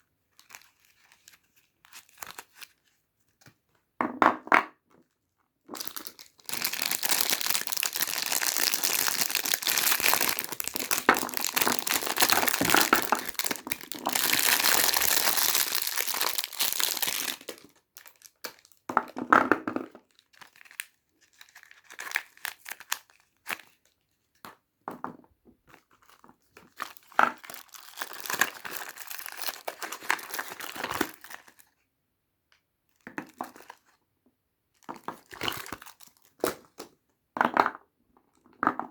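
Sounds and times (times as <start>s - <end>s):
wrappers crinkling and tearing: 0.4s - 2.8s, 5.8s - 18.8s, 20.1s - 24.0s, 26.0s - 31.7s, 35.1s - 36.6s.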